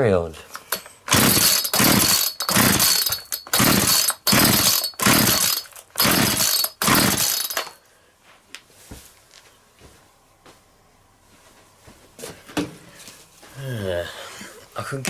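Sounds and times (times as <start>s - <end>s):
chainsaw recoil starter pulls: 0.6s - 7.8s
engine cranking: 0.6s - 7.8s.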